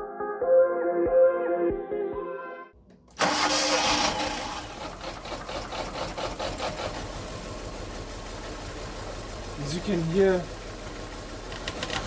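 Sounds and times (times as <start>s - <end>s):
car engine idling unevenly: 3.1s - 12.0s.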